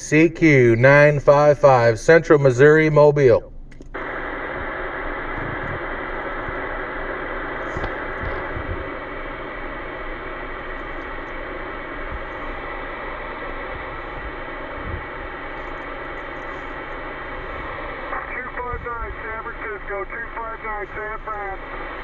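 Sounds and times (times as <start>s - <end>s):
radio static hiss: 0.0s - 2.9s, 4.0s - 22.0s.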